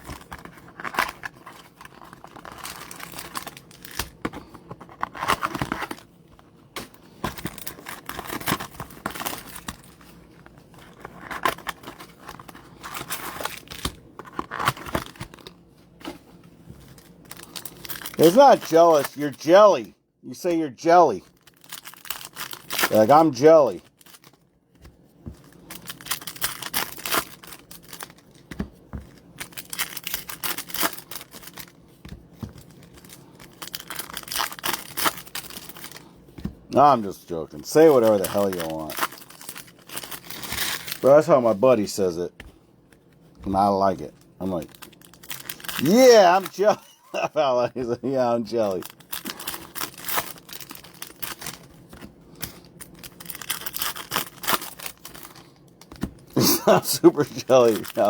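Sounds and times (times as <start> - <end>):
foil wrappers tearing: 0.0 - 4.2, 17.0 - 19.8, 20.4 - 24.3, 25.6 - 28.4, 29.4 - 31.7, 32.6 - 36.1, 36.8 - 42.1, 43.5 - 51.7, 52.3 - 58.0
cards rustling: 0.0 - 6.1, 7.0 - 58.0.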